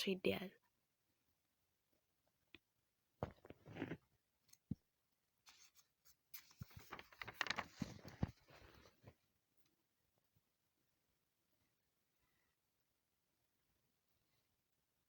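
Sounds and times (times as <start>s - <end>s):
fabric and zipper rustling: 3.4s - 4.0s.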